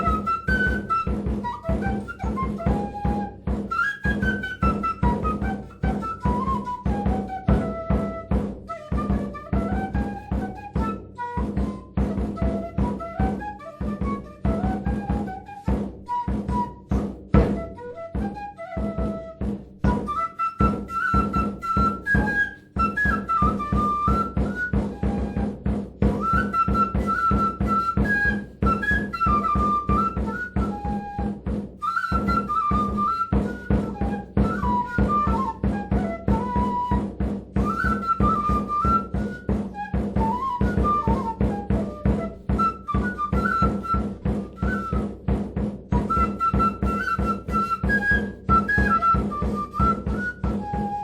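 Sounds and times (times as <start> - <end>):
flute-like melody: 0.0 - 51.0.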